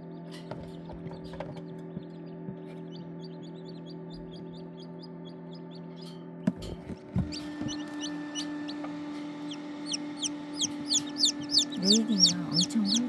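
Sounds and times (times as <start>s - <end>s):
chicks peeping: 0.6s - 13.0s
steady hum: 7.1s - 13.0s.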